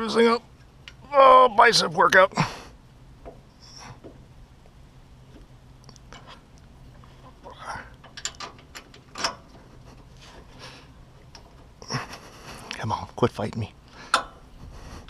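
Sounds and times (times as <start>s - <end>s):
metal clicks of hand tools: 7.9s - 9.6s, 14.1s - 14.4s.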